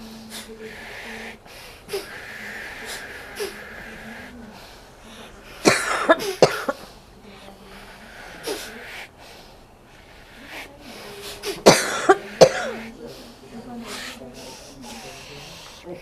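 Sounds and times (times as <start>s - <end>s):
person coughing: 5.6s - 6.8s, 11.4s - 12.9s.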